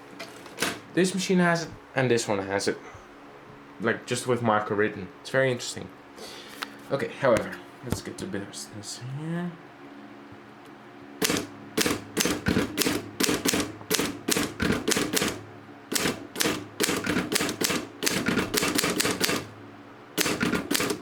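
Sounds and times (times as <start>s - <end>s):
typewriter key strikes: 11.2s - 19.5s, 20.2s - 21.0s.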